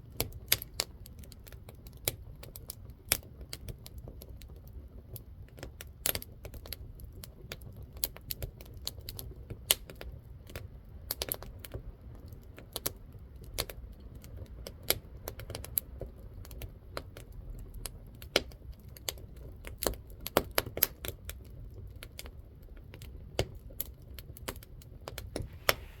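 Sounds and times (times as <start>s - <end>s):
firewood crackling and popping: 0.0s - 26.0s
low rumble of flame: 0.0s - 26.0s.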